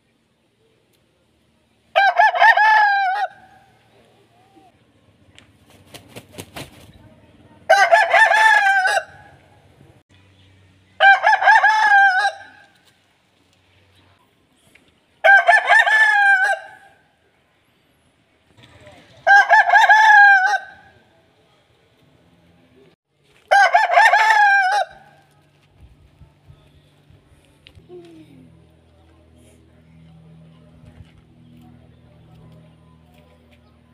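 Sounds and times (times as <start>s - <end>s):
rooster crowing: 2.0s - 3.5s, 7.7s - 9.3s, 11.0s - 12.6s, 15.2s - 17.0s, 19.2s - 21.0s, 23.5s - 25.0s.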